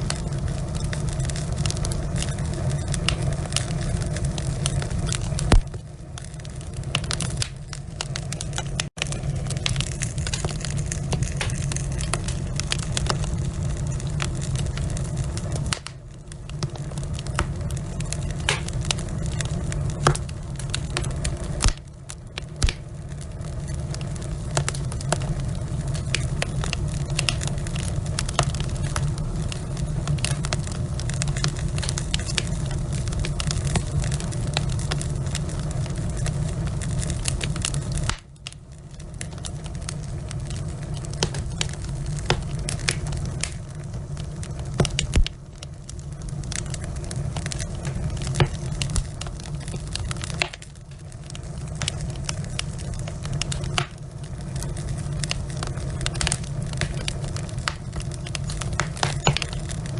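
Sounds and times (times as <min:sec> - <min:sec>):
logs crackling and popping: 0:00.0 - 0:59.9
low rumble of flames: 0:00.0 - 0:59.9.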